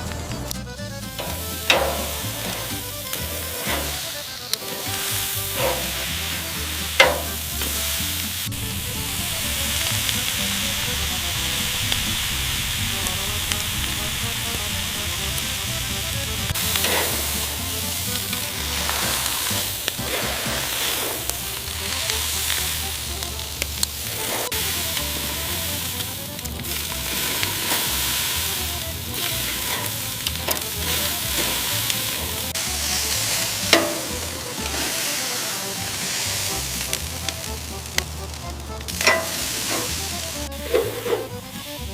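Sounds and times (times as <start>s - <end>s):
food sizzling: 0.0s - 41.9s.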